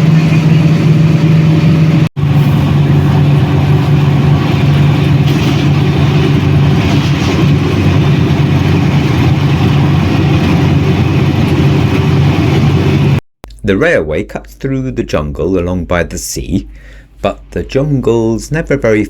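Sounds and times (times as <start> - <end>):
locomotive engine drone: 0.0 - 13.2.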